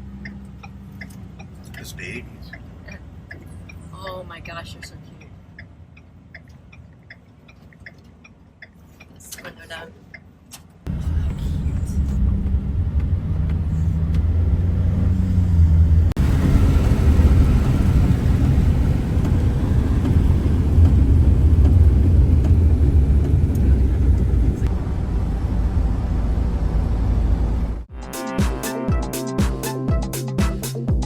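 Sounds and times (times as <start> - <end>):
wind buffeting through car window: 16.1 - 24.7.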